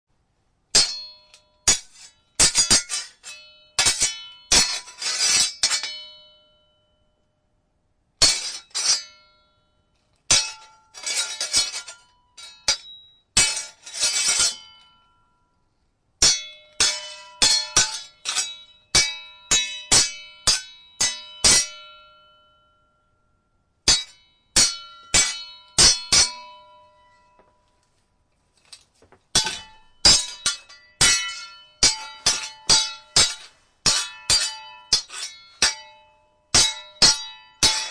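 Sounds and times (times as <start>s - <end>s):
steel swords clashing: 0.7s - 6.6s, 8.2s - 9.4s, 10.3s - 15.0s, 16.2s - 22.4s, 23.9s - 27.3s, 29.3s - 37.9s.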